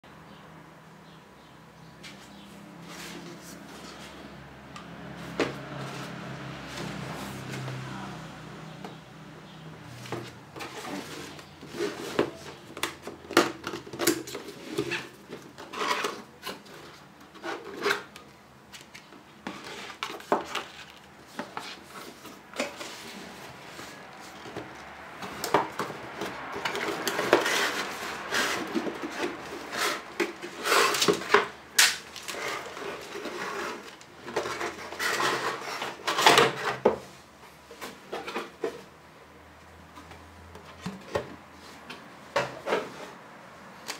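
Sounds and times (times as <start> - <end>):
packaging scraping and rustling: 9.9 - 38.9.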